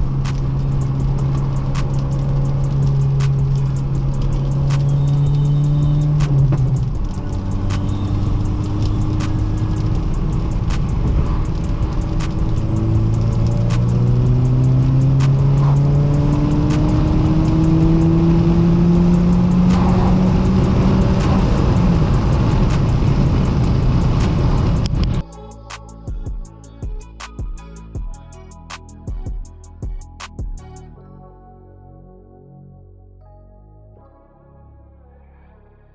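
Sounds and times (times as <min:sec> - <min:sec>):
car engine revving through gears: 0:00.0 - 0:25.2
exhaust crackles: 0:00.0 - 0:25.8.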